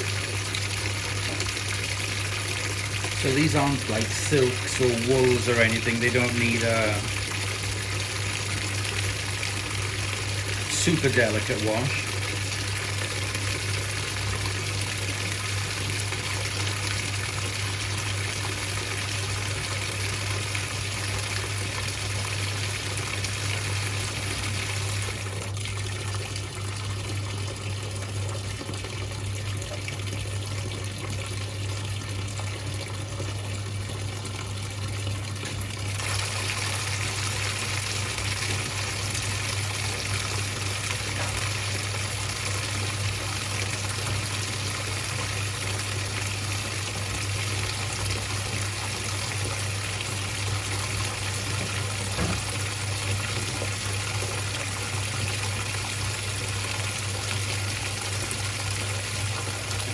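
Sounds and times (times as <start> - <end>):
washing machine filling with water: 0.0 - 59.9.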